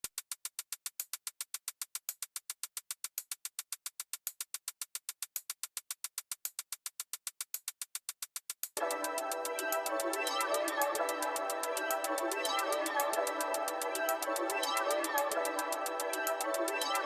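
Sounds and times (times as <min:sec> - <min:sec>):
drum machine ticking: 0:00.0 - 0:17.0
synth chords: 0:08.8 - 0:17.0.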